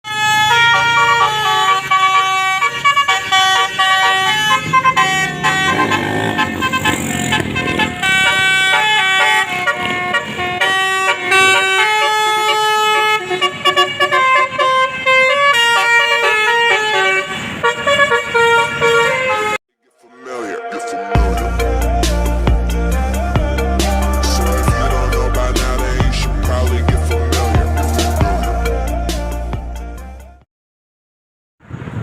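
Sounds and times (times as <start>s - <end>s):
musical vehicle horn melody: 0.1s - 30.4s.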